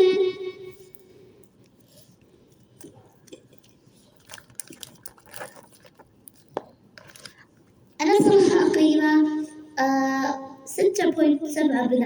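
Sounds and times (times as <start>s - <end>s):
crinkling and clicking handling noises: 0.9s - 8.0s.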